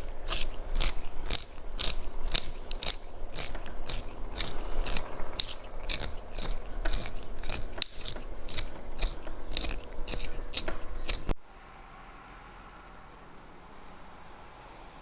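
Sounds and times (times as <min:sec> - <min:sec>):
kinetic sand crunching: 0:00.0 - 0:11.3.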